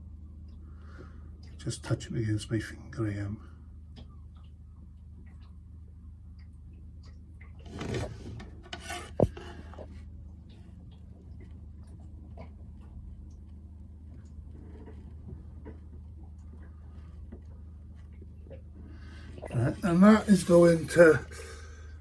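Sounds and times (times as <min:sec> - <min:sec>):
steady low hum: 0:00.0 - 0:22.0
rubbing and rustling: 0:07.6 - 0:10.0.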